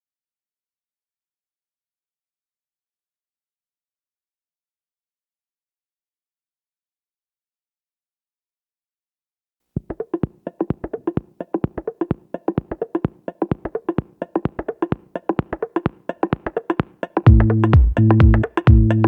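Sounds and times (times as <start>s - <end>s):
fast dry percussive beat: 9.8s - 19.0s
deep synth bass notes: 17.3s - 19.0s.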